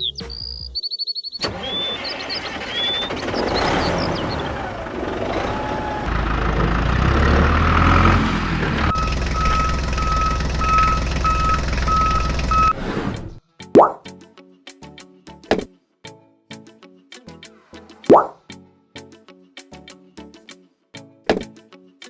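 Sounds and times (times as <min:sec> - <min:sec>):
vehicle engine rumbling: 0:01.5 - 0:13.4
reversing alarm beeping: 0:08.8 - 0:12.8.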